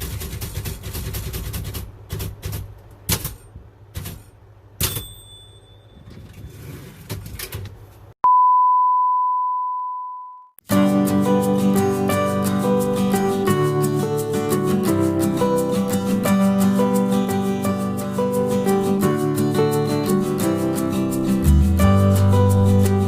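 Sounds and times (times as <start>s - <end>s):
typewriter keys striking: 0.0s - 4.3s
typewriter bell ring: 4.8s - 6.1s
steady beep: 8.2s - 10.6s
strummed guitar music: 10.7s - 23.0s.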